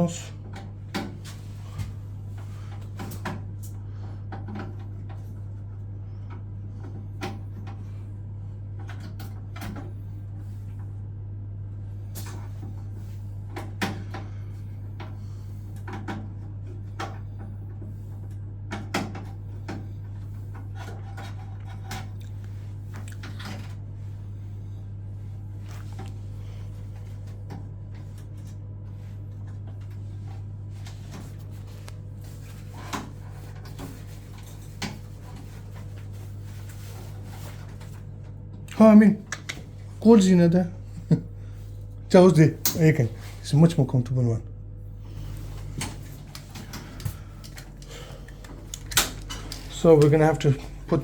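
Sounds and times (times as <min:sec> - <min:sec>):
steady low hum: 0:00.0 - 0:51.0
clicks and knocks of handling: 0:45.7 - 0:51.0.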